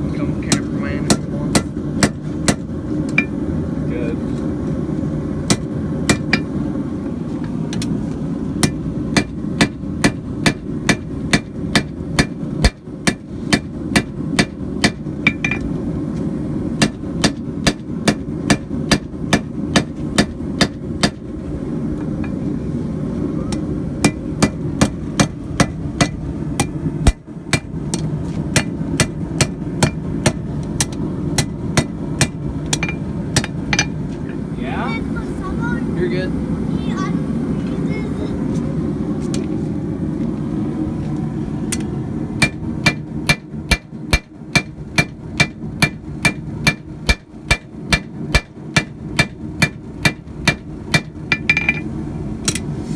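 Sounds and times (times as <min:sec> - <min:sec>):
hammer striking steel on anvil: 0:00.5 - 0:03.4, 0:05.5 - 0:06.5, 0:08.6 - 0:15.7, 0:16.8 - 0:21.2, 0:23.5 - 0:34.0, 0:42.4 - 0:51.8.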